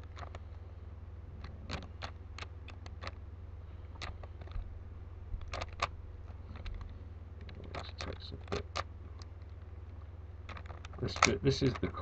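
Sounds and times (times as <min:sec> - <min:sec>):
puzzle cube clicking: 0:00.0 - 0:00.4, 0:01.4 - 0:03.2, 0:03.9 - 0:04.6, 0:05.4 - 0:09.7, 0:10.4 - 0:12.0
steady low hum: 0:00.0 - 0:12.0.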